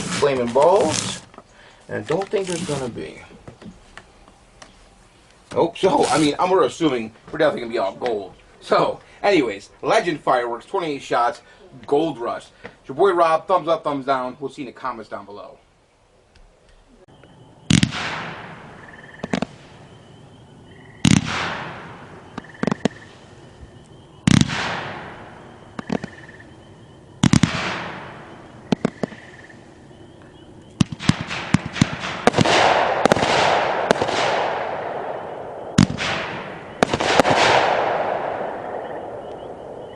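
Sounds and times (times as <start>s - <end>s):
fireworks shots crackling: 0.0s - 1.3s, 1.9s - 3.2s, 5.8s - 6.6s, 17.7s - 20.0s, 21.0s - 26.5s, 27.2s - 29.8s, 30.6s - 39.9s
soft fireworks pops: 0.0s - 6.4s, 17.7s - 18.6s, 19.2s - 19.8s, 21.0s - 23.3s, 24.2s - 26.2s, 27.2s - 29.4s, 30.7s - 34.6s, 35.7s - 38.5s.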